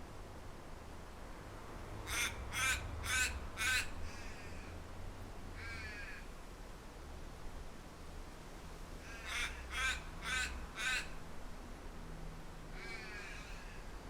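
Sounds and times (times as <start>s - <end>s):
crow cawing: 2.1s - 4.8s, 5.6s - 6.3s, 9.0s - 11.2s, 12.8s - 13.9s.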